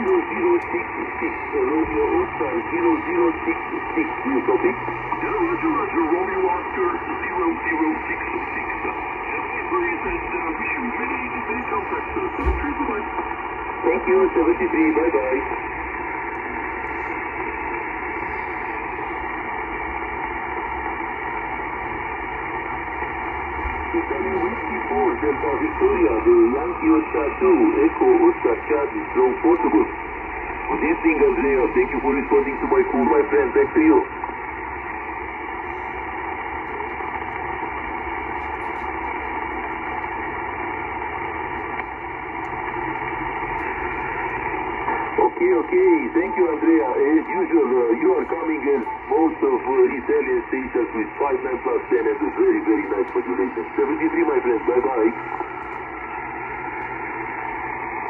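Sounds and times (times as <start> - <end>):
radio static hiss: 0.0 - 58.0.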